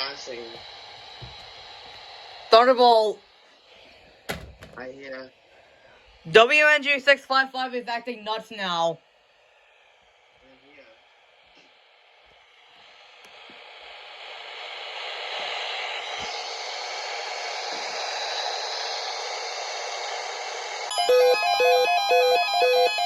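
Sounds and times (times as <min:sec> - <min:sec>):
radio static hiss: 0:00.0 - 0:03.2
electronic beeping tune: 0:20.9 - 0:23.0.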